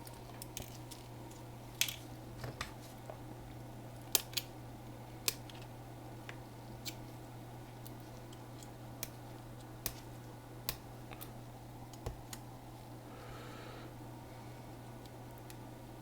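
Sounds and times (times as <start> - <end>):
tools clicking and tapping on laptop: 11.9 - 12.5.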